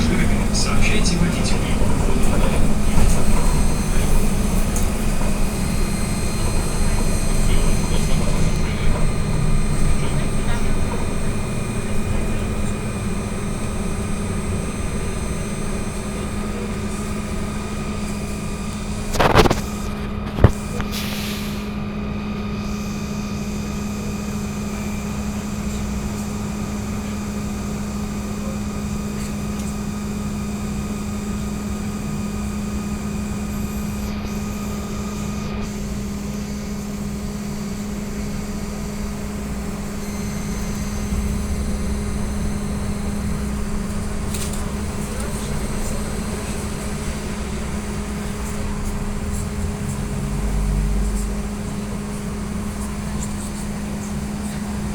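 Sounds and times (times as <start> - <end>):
electric hum: 0.0 - 21.2, 22.5 - 54.9
burst of hiss: 20.8 - 21.7.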